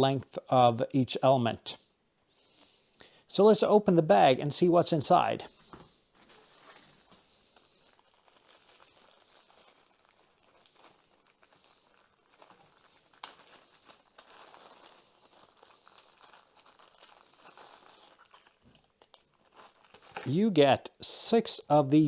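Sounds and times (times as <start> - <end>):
plastic bag crinkling: 6.1 - 20.4.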